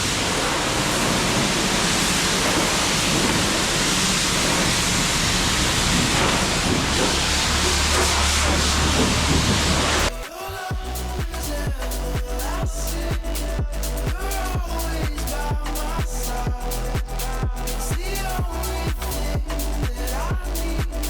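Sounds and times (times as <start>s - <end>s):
pressure washer spraying water: 0.0s - 10.3s
low hum: 0.0s - 21.0s.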